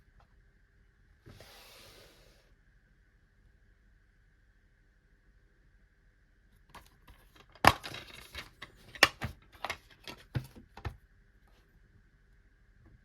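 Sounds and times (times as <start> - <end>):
plastic cases clicking and knocking: 6.8 - 11.0.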